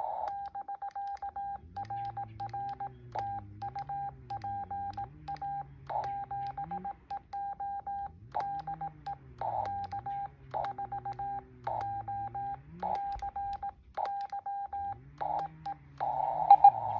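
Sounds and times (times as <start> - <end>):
key clicks: 0.0 - 16.9
morse code tone: 0.0 - 16.9.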